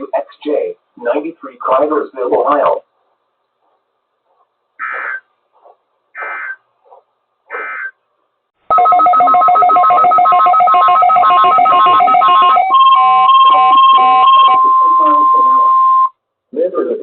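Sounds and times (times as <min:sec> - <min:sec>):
digital data bursts: 0:04.8 - 0:05.3, 0:06.2 - 0:06.6, 0:08.7 - 0:16.0
steady alarm tone: 0:08.7 - 0:16.1
alternating electronic beeping tones: 0:08.7 - 0:16.2.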